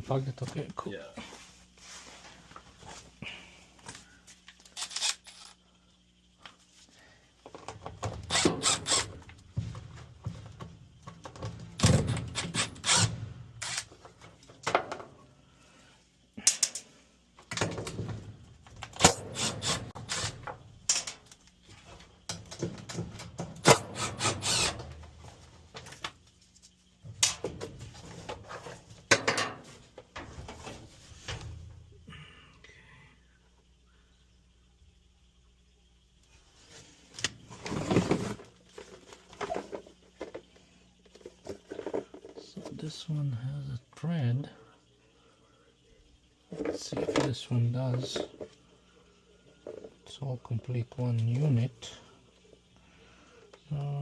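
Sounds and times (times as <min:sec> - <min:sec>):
tools knocking and scraping metal: 0:27.1 - 0:31.6.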